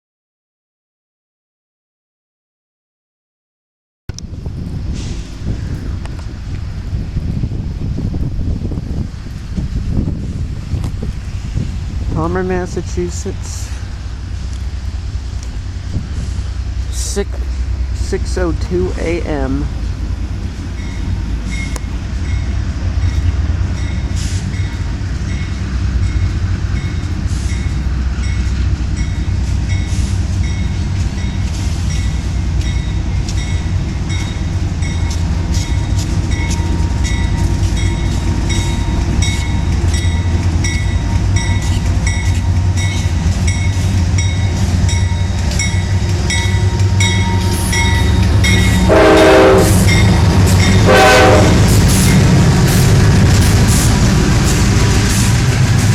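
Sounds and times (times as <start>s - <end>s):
train rumbling by: 4.1s - 55.9s
train horn: 46.5s - 51.8s.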